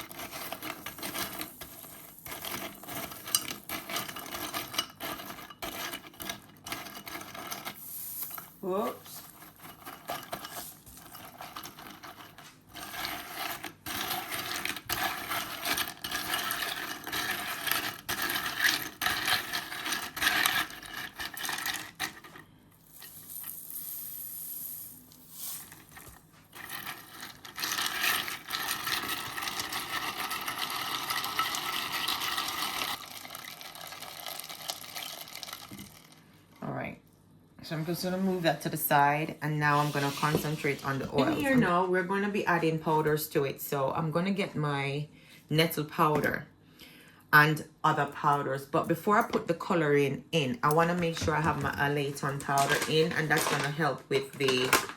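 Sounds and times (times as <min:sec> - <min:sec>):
ice cubes clinking and rattling: 0:00.0 - 0:36.3, 0:50.8 - 0:54.9.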